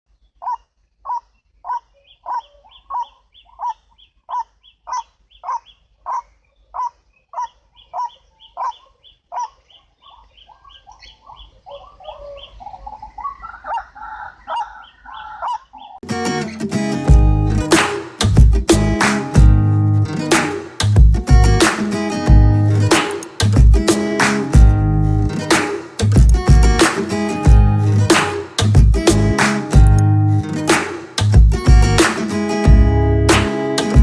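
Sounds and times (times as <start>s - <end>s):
loud music: 16.0s - 34.0s.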